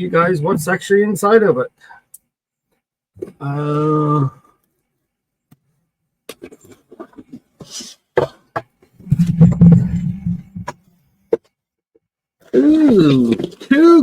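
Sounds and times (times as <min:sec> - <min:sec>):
low rubbing and scraping: 0:09.0 - 0:10.7.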